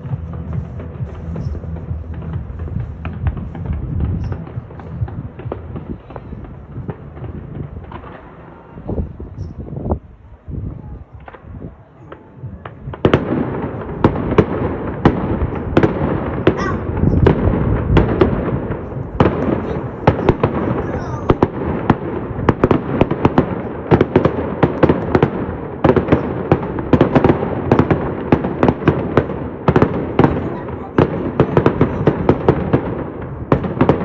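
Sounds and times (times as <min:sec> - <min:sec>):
fireworks bangs and crackling: 0:00.0 - 0:34.0.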